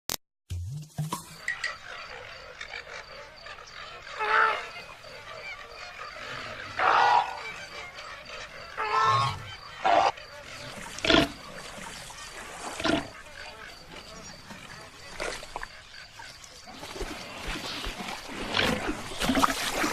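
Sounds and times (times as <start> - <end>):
animal calling: 1.4 - 11.4.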